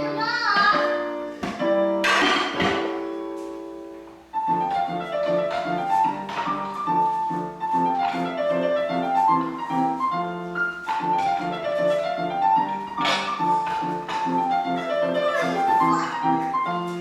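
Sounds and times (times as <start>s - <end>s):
instrumental piano music: 0.0s - 17.0s.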